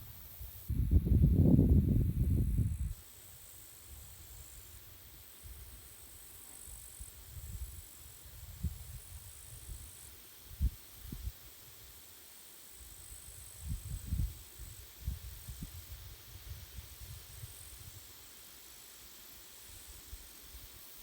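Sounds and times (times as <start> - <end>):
wind buffeting microphone: 0.7 - 2.9.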